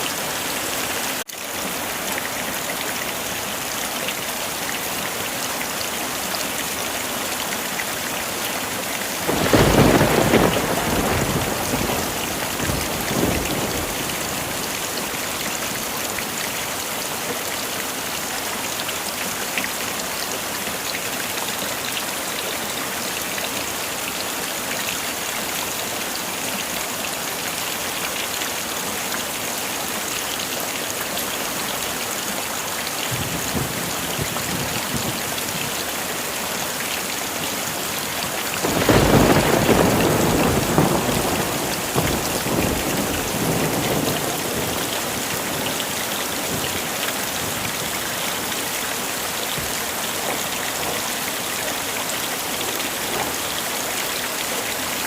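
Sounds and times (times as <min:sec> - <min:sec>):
heavy rain falling: 0:00.0 - 0:55.0
thunder rumbling: 0:09.3 - 0:14.8, 0:38.6 - 0:47.9.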